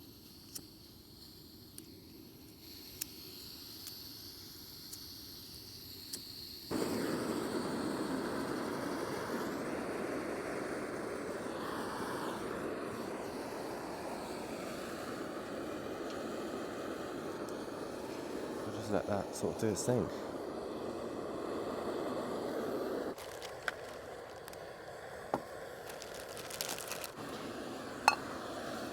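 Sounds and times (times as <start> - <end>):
gas burner hissing: 0.0 - 28.9
gas stove igniter clicks: 16.0 - 16.2.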